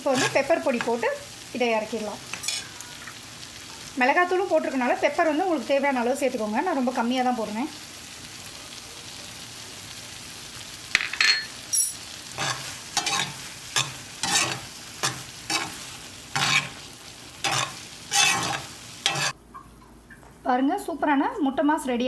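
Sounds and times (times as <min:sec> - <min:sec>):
utensil scraping a frying pan: 0:00.0 - 0:01.0, 0:02.2 - 0:03.2, 0:12.0 - 0:19.4
low sizzle: 0:00.0 - 0:22.0.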